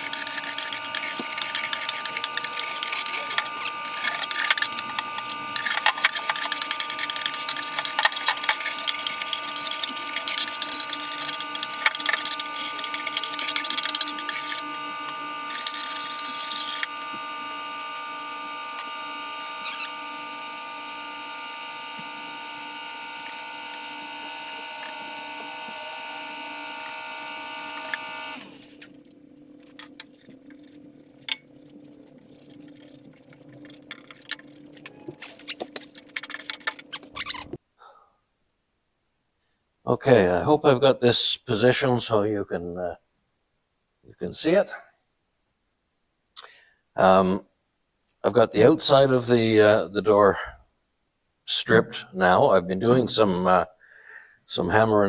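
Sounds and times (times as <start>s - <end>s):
power tool abrasive rasp: 0.0s - 29.0s
power tool motor hum: 0.0s - 37.6s.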